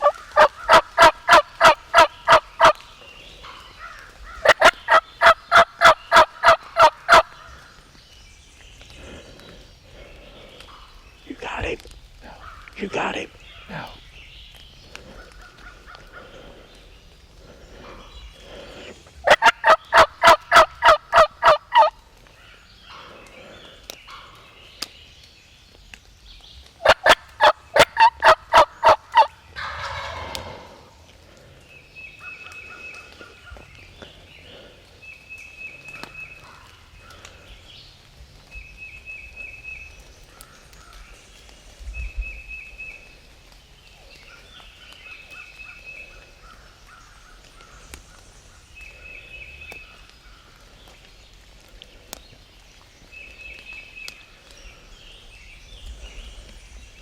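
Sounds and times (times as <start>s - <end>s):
wild turkey calling: 0.0s - 7.8s, 12.2s - 14.0s, 14.9s - 24.9s, 26.8s - 31.2s.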